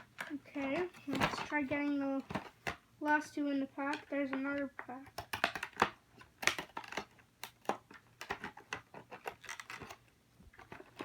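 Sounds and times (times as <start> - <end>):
toy cars being handled: 0.0 - 11.0
plastic blister packaging clicks: 3.8 - 11.0.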